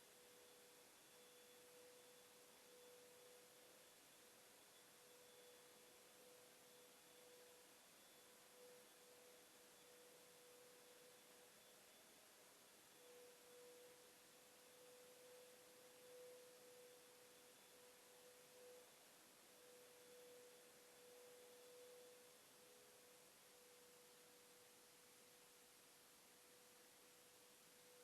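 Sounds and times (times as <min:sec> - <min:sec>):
faint hiss: 0:00.0 - 0:28.0
faint steady hum: 0:00.0 - 0:28.0.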